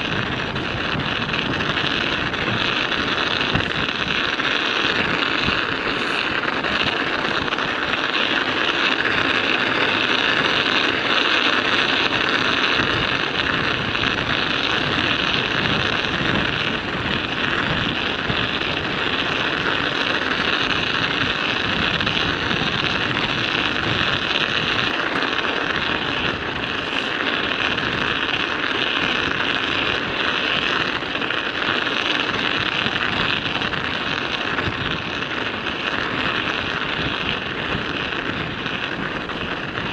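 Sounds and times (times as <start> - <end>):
studded bicycle tyres clattering on ice: 0.0 - 39.9
wind buffeting microphone: 0.0 - 39.9.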